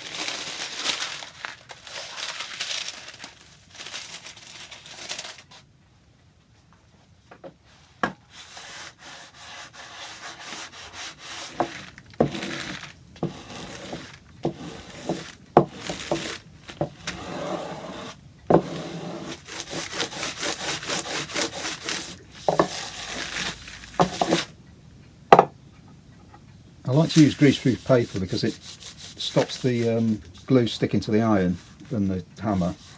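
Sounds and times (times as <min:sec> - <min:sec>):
hand tool scraping wood: 0:08.4 - 0:24.5, 0:26.9 - 0:32.9.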